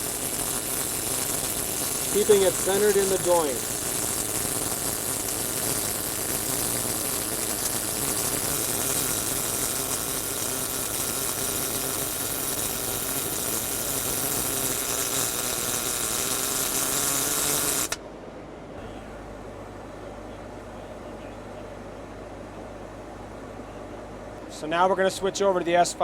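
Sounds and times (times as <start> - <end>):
welding arc crackling: 0.0 - 18.0.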